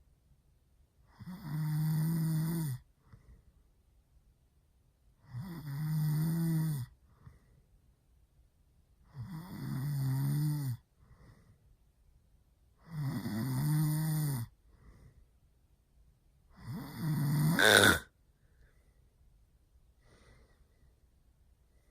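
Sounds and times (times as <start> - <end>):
man snoring loudly: 1.2 - 2.8, 5.3 - 6.9, 9.2 - 10.8, 12.9 - 14.5, 16.6 - 18.1.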